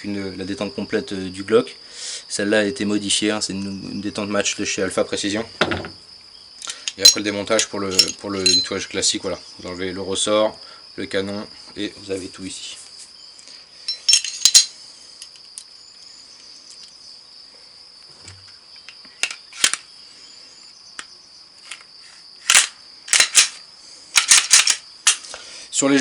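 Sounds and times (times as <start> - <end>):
metallic clicks of pistol parts: 6.6 - 8.7, 18.8 - 19.8, 22.5 - 23.6, 24.2 - 25.4.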